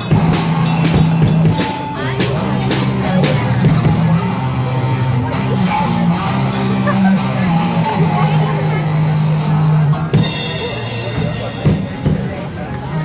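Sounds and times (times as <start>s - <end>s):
cymbal strikes: 0.0s - 4.2s, 6.4s - 13.0s
drum kit hits: 0.0s - 12.7s
bass held low notes: 0.0s - 13.0s
guitar: 0.0s - 13.0s
rock band playing: 0.0s - 13.0s.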